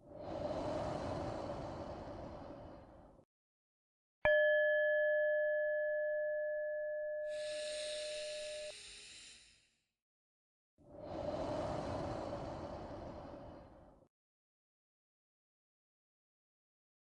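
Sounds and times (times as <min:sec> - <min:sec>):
slow breath: 0:00.0 - 0:03.3, 0:07.3 - 0:08.7, 0:10.8 - 0:14.1
meditation bell ringing: 0:04.3 - 0:08.7.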